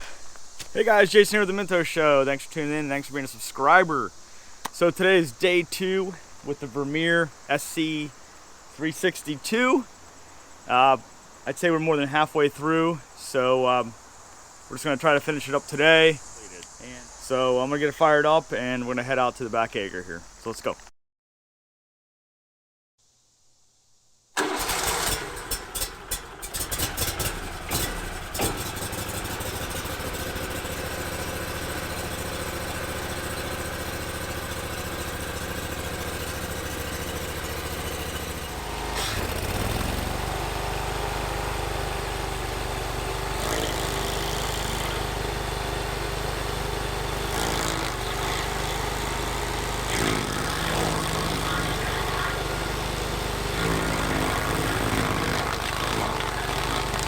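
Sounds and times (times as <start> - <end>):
gasoline engine starting and idling: 24.4 - 57.0.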